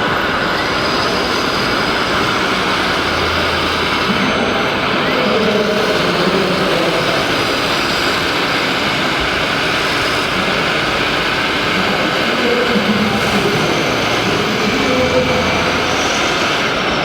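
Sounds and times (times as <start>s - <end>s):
faint whine: 9.8s - 17.0s.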